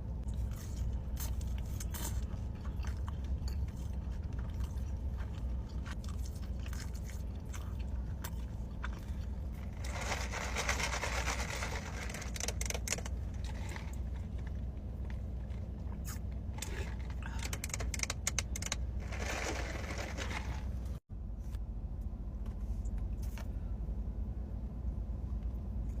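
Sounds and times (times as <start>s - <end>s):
steady low hum: 0.0s - 26.0s
person chewing with clicks: 0.3s - 9.6s
crunching: 0.4s - 21.0s.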